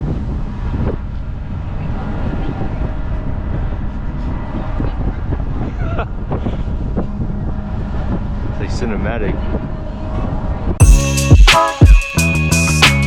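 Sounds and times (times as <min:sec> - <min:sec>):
low engine rumble: 0:00.0 - 0:10.9.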